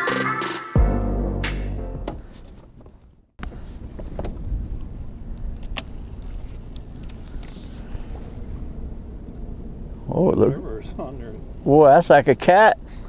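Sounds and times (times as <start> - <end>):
electronic intro music: 0.0 - 2.2.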